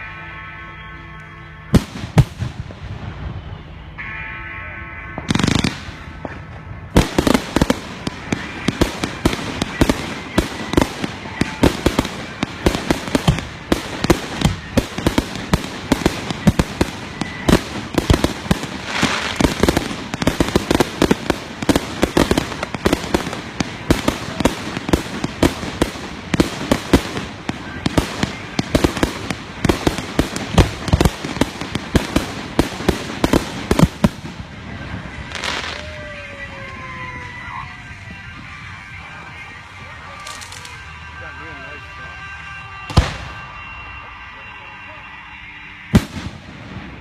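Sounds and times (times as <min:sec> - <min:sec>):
fireworks bangs and cracks: 0:01.7 - 0:03.6, 0:05.1 - 0:38.5, 0:42.8 - 0:44.0, 0:45.9 - 0:47.0.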